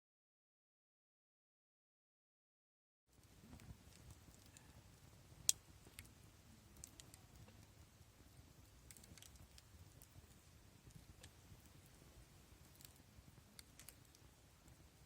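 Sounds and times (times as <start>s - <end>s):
campfire crackling and popping: 3.2s - 15.0s.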